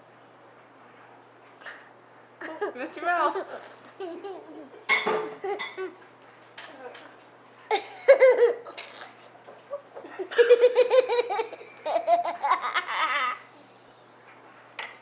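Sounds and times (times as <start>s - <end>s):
high-pitched laughter: 7.7s - 13.5s.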